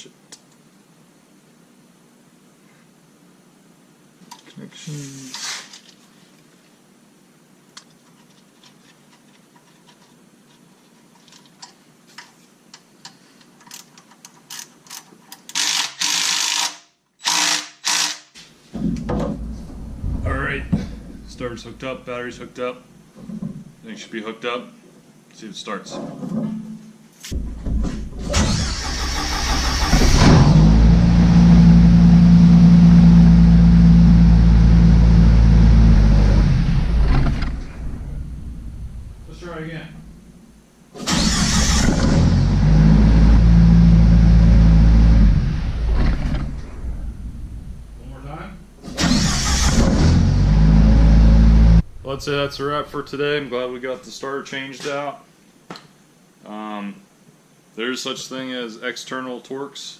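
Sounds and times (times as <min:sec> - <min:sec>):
hand ratchet clicking: 0:13.6 - 0:18.3
starter motor cranking engine: 0:28.2 - 0:31.0, 0:41.0 - 0:43.5, 0:48.8 - 0:51.7.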